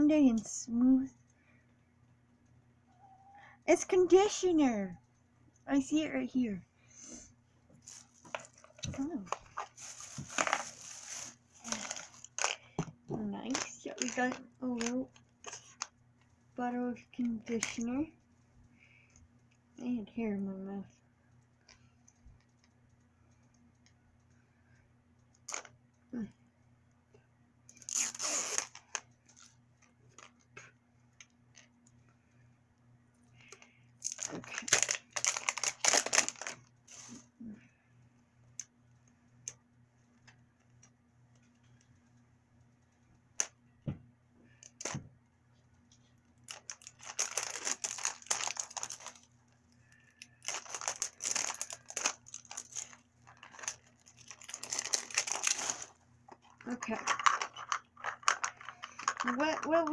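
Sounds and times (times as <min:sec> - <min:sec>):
plastic packaging rustling: 0:07.8 - 0:12.7, 0:13.4 - 0:15.9, 0:33.4 - 0:37.3, 0:46.4 - 0:59.9.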